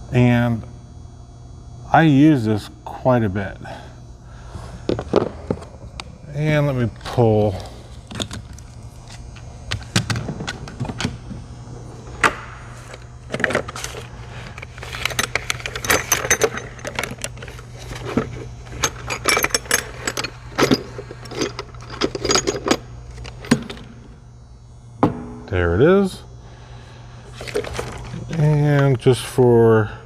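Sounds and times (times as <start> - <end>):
low hum: 0.0 - 30.0
metal tools clinking in toolbox: 14.6 - 23.9.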